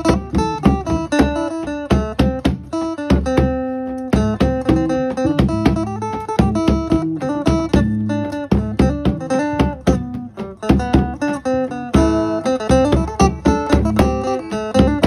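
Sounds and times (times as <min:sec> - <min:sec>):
low drum beat: 0:00.0 - 0:11.3
plucked string melody: 0:00.0 - 0:15.0.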